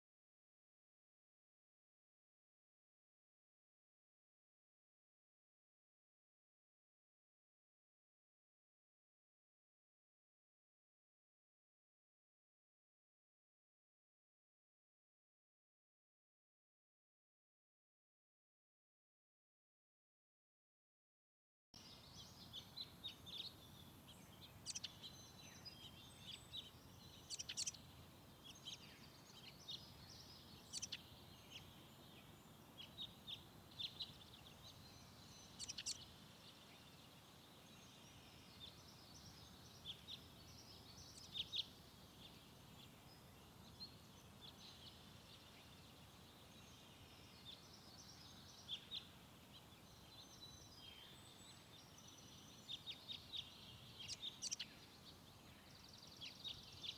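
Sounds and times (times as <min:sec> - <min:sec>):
faint steady hiss: 0:21.8 - 0:56.9
small birds chirping: 0:21.8 - 0:56.9.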